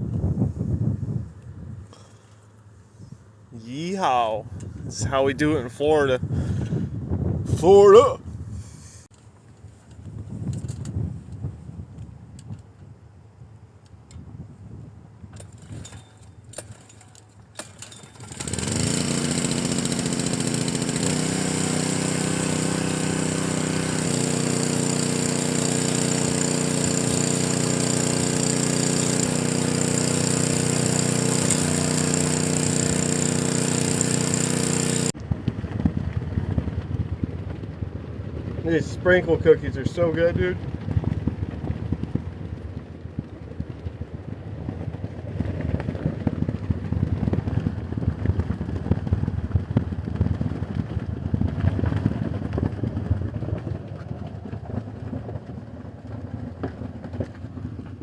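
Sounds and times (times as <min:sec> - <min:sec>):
motor whining and humming: 0:18.4 - 0:35.2
quiet knocks and rumbles: 0:45.7 - 0:58.0.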